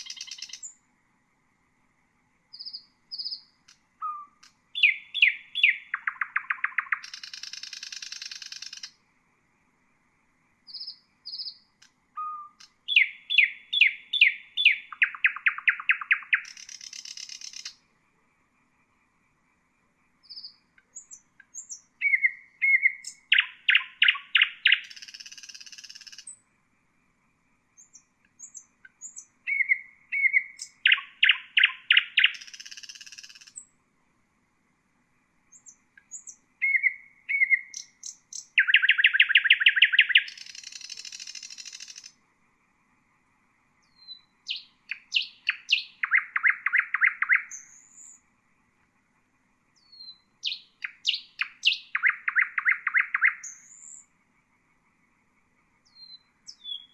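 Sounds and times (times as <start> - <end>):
nightingale singing: 0.0 - 0.9, 2.4 - 9.0, 10.6 - 18.0, 18.6 - 26.5, 27.6 - 33.8, 35.4 - 42.3, 43.7 - 56.9.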